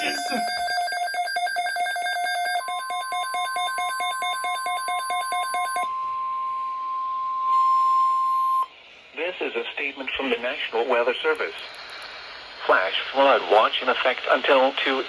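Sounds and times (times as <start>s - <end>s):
electronic alarm beeping rapidly: 0.0s - 6.0s.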